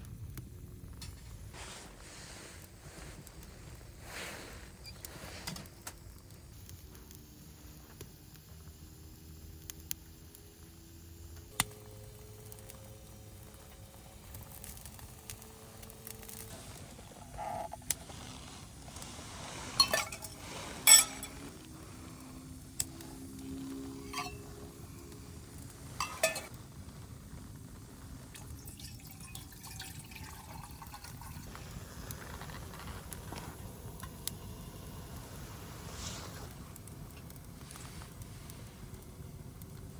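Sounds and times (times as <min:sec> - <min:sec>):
firewood burning with hiss: 0:00.0 - 0:39.9
fire pops and clinks: 0:11.4 - 0:35.6.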